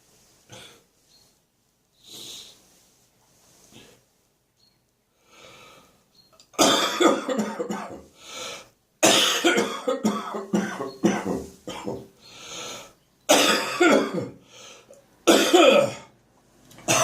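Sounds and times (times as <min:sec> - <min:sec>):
person coughing: 0:06.6 - 0:08.1, 0:09.0 - 0:12.1, 0:13.3 - 0:14.4, 0:15.3 - 0:16.1.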